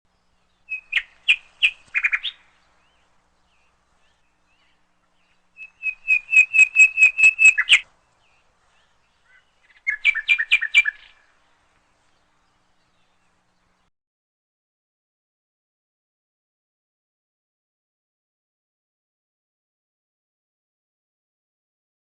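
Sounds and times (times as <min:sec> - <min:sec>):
songbird whistling: 0:00.4 - 0:03.0, 0:04.0 - 0:07.8, 0:08.8 - 0:11.3.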